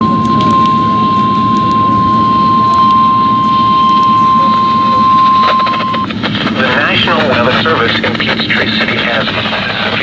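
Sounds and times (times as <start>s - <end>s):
steady warning alarm tone: 0.0s - 8.0s
radio static with crackles: 0.2s - 10.0s.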